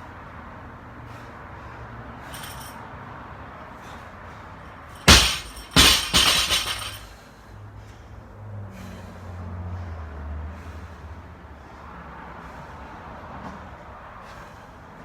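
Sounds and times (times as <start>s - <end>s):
heavy breathing: 0.0s - 5.0s, 6.9s - 15.0s
barbell clanging on floor: 5.0s - 7.1s
rattle of weight plates: 5.0s - 7.1s.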